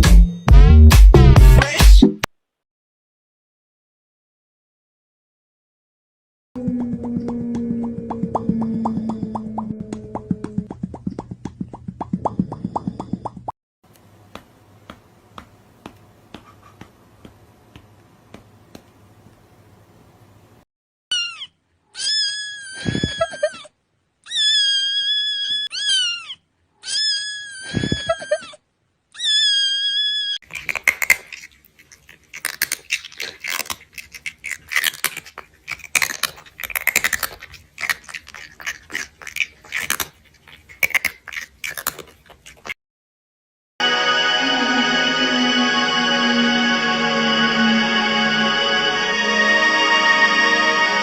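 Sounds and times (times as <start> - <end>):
cat meowing: 24.3 - 28.2.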